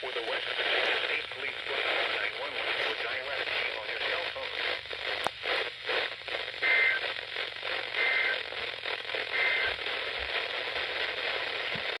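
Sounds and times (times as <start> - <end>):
radio static and crackle: 0.0 - 12.0
two-tone digital data bursts: 6.6 - 7.1, 8.0 - 8.4, 9.3 - 9.8.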